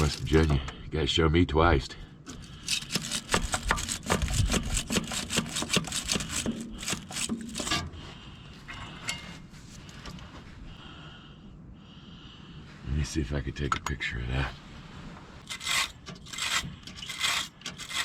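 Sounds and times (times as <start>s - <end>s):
rapid scraping strokes: 0.0s - 0.6s, 2.3s - 7.9s, 15.3s - 18.0s
faint steady background noise: 0.0s - 18.0s.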